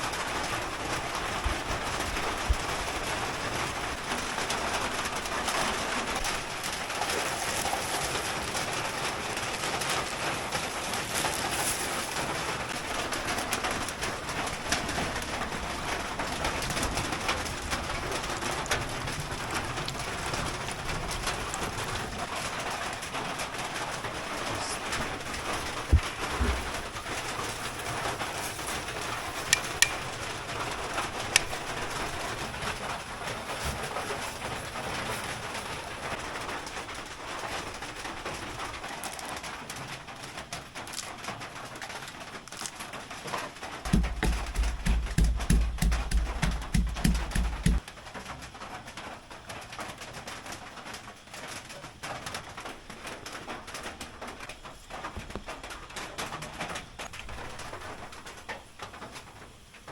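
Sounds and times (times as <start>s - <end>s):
steady rain in forest: 0.0s - 59.9s
low even thumps: 43.9s - 47.8s.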